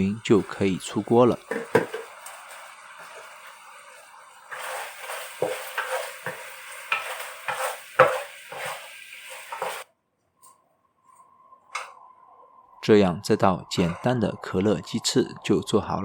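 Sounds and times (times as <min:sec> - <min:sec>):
sauce sizzling in a pan: 0:00.0 - 0:09.9.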